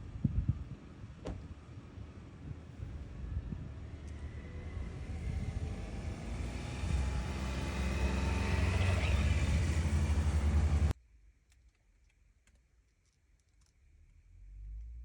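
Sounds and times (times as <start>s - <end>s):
road noise: 0.0s - 11.0s
car engine running: 2.8s - 10.9s.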